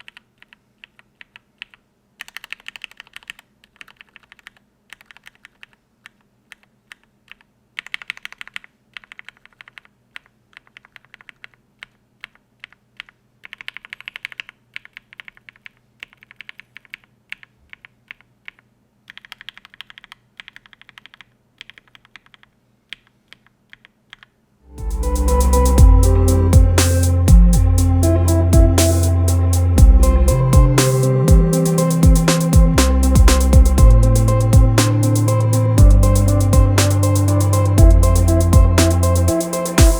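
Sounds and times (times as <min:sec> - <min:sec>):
typing on mechanical keyboard: 0:00.0 - 0:24.3.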